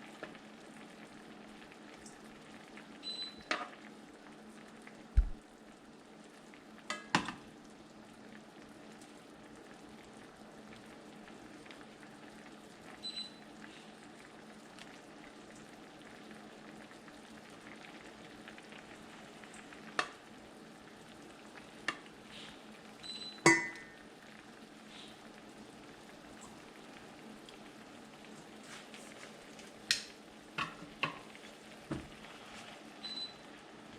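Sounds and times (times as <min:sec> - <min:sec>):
squid sizzling in a pan: 0:00.0 - 0:33.9
cooking utensil clinking on pan: 0:23.5 - 0:23.8.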